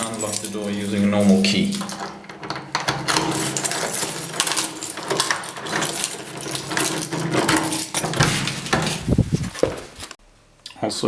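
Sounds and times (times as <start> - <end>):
key turning in door lock: 0.0 - 10.2
keys jingling: 0.0 - 10.2.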